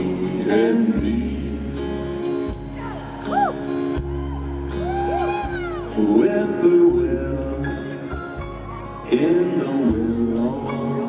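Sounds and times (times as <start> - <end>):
live band playing ballad: 0.0 - 11.0
whooping: 3.2 - 6.0
person singing: 4.7 - 11.0.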